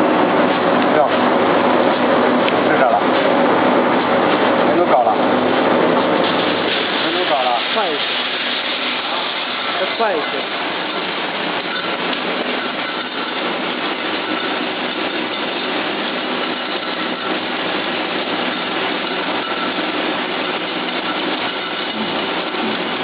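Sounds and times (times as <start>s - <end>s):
roasting machine running: 0.0s - 23.0s.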